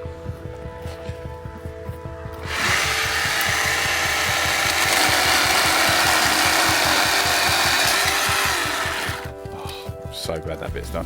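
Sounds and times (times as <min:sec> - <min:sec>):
background music with steady beat: 0:00.0 - 0:11.0
battery chainsaw cutting wood: 0:02.4 - 0:09.3.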